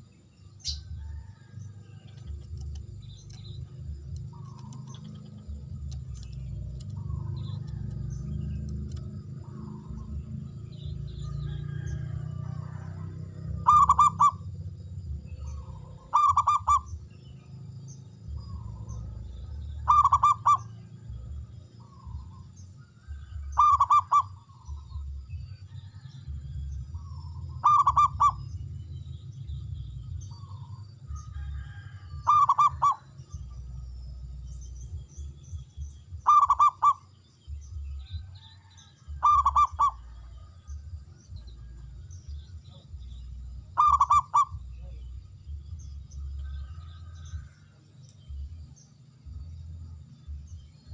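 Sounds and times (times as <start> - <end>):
low steady hum: 0.0 - 50.9
dove stuttering coos: 4.2 - 14.5, 15.4 - 17.1, 18.3 - 22.4, 23.1 - 25.1, 25.8 - 28.6, 30.3 - 33.6, 36.2 - 37.1, 39.1 - 40.8, 43.7 - 44.7
soft dove coos: 12.6 - 14.4, 19.8 - 20.8, 36.2 - 37.1, 39.2 - 40.3.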